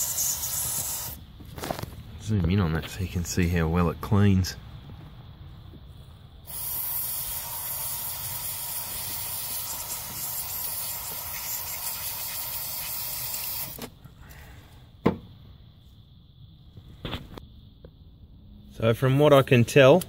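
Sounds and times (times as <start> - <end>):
aerosol spray hissing: 0.0 - 1.2, 6.5 - 13.8.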